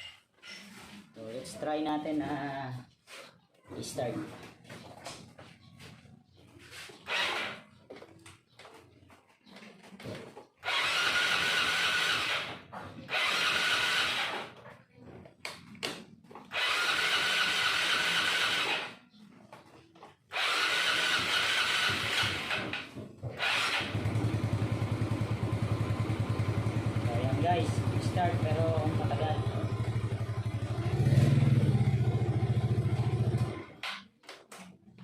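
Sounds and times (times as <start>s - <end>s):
scooter electric starter cranking: 7.0s - 7.6s, 10.6s - 14.6s, 16.5s - 19.0s, 20.3s - 31.2s
scooter engine running: 10.0s - 14.6s, 16.5s - 19.0s, 20.3s - 33.9s.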